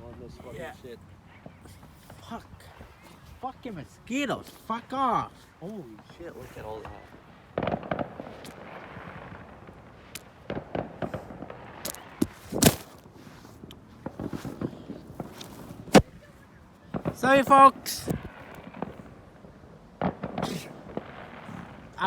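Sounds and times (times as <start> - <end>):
fireworks crackle: 5.9 - 16.2, 16.9 - 22.0
fireworks bangs: 6.8 - 13.3, 20.0 - 22.0.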